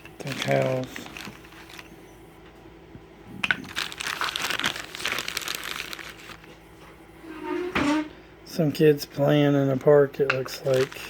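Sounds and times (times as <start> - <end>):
plastic packaging crinkling: 0.0 - 2.0, 3.4 - 6.6, 10.5 - 11.0.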